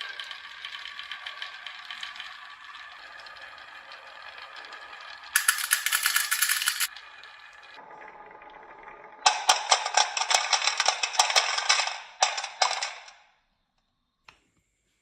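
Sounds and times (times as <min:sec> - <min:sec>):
marbles rolling on a track: 0:00.0 - 0:07.8, 0:09.1 - 0:13.2
marbles clattering: 0:05.4 - 0:06.9.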